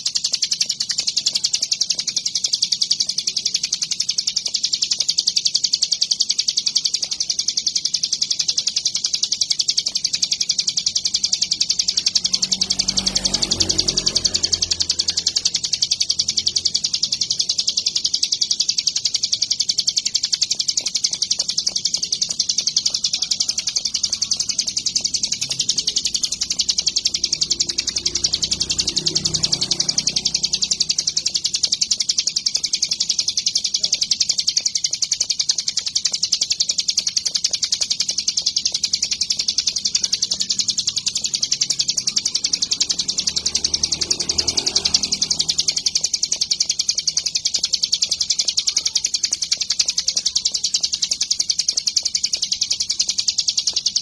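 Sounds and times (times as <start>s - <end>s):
bird singing rapid trill: 0.0s - 54.0s.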